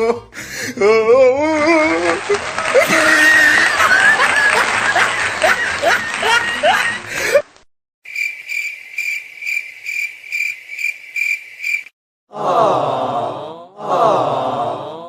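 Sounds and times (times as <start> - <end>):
cricket chirping: 8.1 - 11.9.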